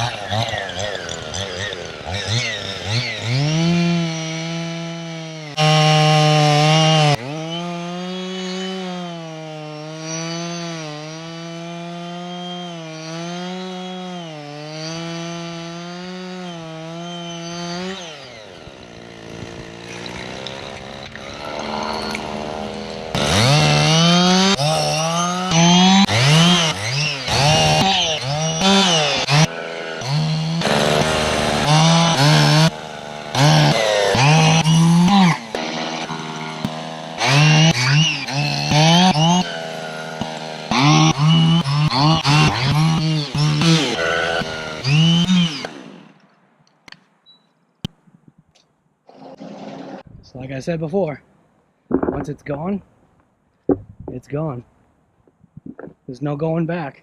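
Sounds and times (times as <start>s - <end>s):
chainsaw cutting wood: 0.0s - 47.1s, 49.1s - 50.1s, 51.9s - 52.3s.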